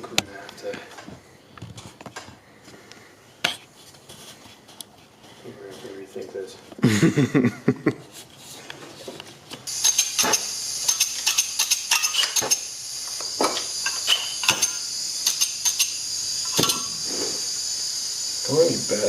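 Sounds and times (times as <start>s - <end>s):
steady high hiss: 4.6s - 8.0s, 9.6s - 19.0s
metal tools clinking: 9.7s - 12.7s, 13.6s - 17.0s.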